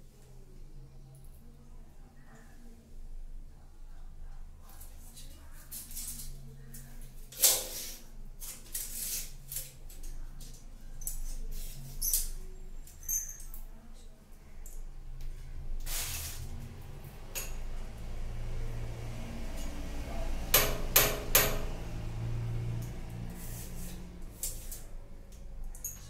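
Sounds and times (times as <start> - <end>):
low steady hum: 0.0 - 7.3.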